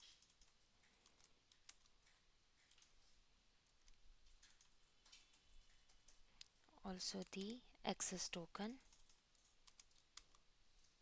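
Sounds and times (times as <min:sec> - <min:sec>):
computer keyboard keystrokes: 0:00.0 - 0:03.0, 0:03.7 - 0:06.6, 0:08.6 - 0:10.4.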